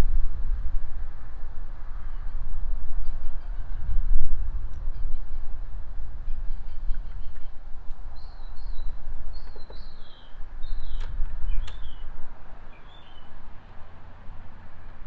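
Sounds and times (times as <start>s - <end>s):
steady low rumble: 0.0s - 15.0s
birds chirping: 6.2s - 13.8s
sharp clicks: 11.0s - 11.9s.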